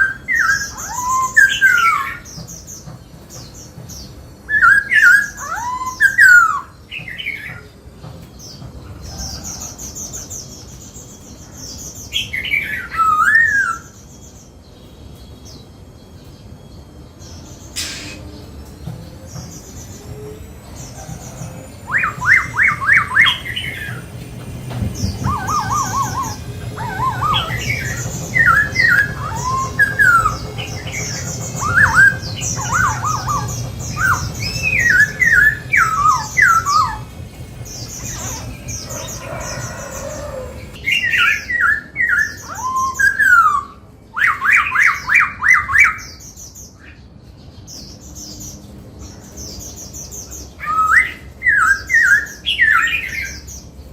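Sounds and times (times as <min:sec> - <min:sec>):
bird singing whistled notes: 0:00.0 - 0:07.7, 0:12.0 - 0:46.9
low hum: 0:17.5 - 0:40.8.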